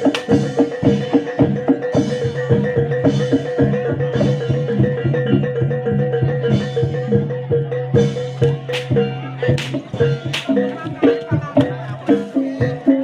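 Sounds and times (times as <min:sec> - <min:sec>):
drums: 0:00.0 - 0:13.0
metal-keyed percussion: 0:00.0 - 0:13.0.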